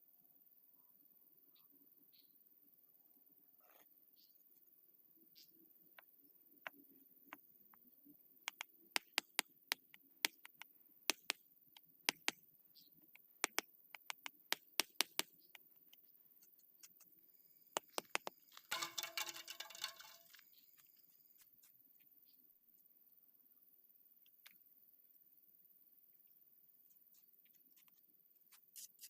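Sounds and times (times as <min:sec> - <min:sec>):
concrete paving blocks clacking: 0:17.8 - 0:20.5.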